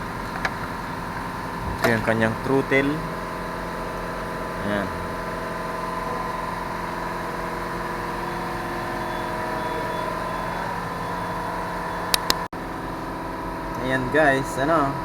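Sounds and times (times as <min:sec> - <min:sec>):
idling engine-like hum: 0:00.0 - 0:15.0
sharp clicks: 0:12.1 - 0:12.5.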